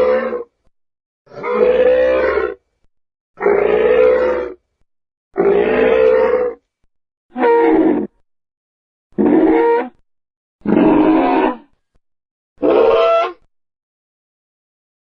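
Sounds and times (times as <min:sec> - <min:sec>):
dinosaur roar: 0:00.0 - 0:00.5, 0:01.3 - 0:02.6, 0:03.4 - 0:04.6, 0:05.4 - 0:06.6, 0:10.6 - 0:11.7, 0:12.6 - 0:13.4.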